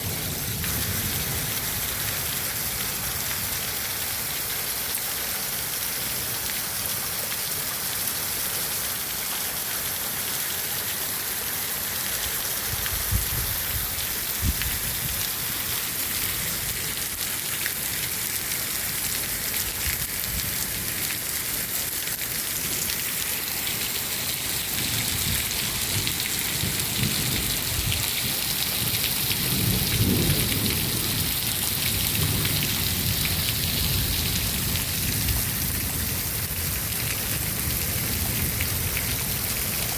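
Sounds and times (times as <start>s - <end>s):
heavy rain falling: 0.0s - 39.9s
thunder rumbling: 29.1s - 36.8s.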